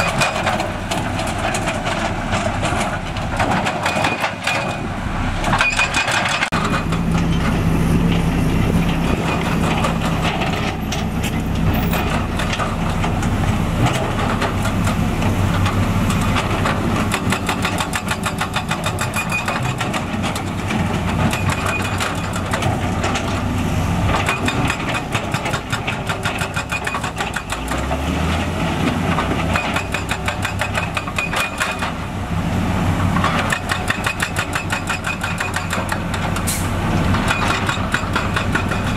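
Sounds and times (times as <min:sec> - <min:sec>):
heavy diesel engines clattering: 0:00.0 - 0:38.9
engine revving: 0:27.5 - 0:29.6.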